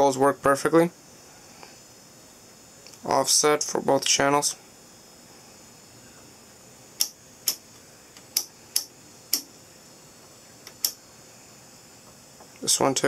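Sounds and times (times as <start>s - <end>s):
faint high whine: 0.0s - 13.0s
oscilloscope control clicks: 7.0s - 9.5s, 10.6s - 11.0s.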